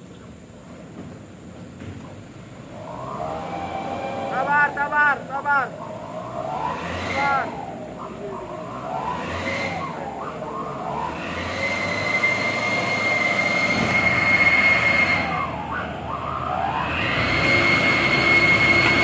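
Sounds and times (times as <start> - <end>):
heavy vehicle rumble: 0.0 - 19.0
high-pitched squeal: 2.6 - 19.0.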